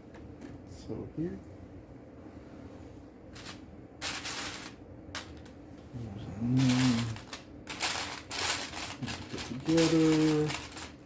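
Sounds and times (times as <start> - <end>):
man's voice humming: 5.9 - 7.2
plastic bricks clicking and rustling: 6.6 - 11.0.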